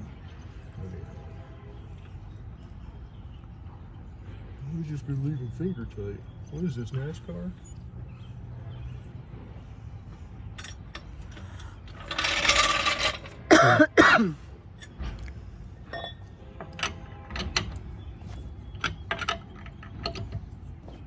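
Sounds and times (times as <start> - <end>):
metallic clicks of lug wrench: 15.9 - 20.6.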